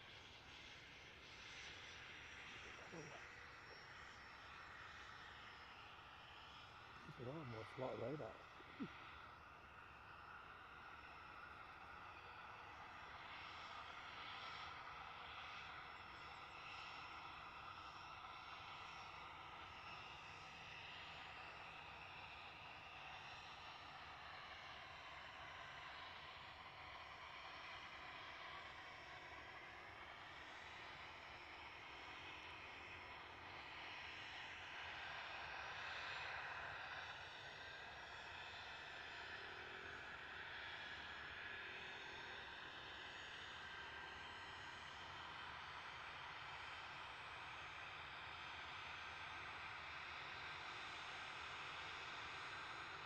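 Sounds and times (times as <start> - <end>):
distant aircraft noise: 0.0 - 53.0.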